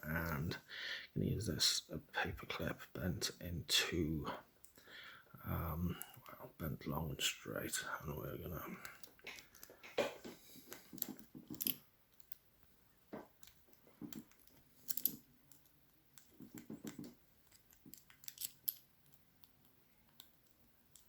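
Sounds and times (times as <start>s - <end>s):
metallic clicks of lock picking: 10.7s - 12.4s, 13.4s - 21.0s.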